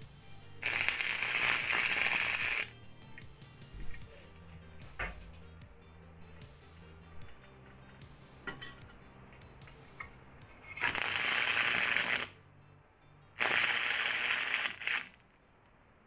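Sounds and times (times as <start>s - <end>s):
welding arc crackling: 0.6s - 2.7s, 10.8s - 12.4s, 13.4s - 15.2s.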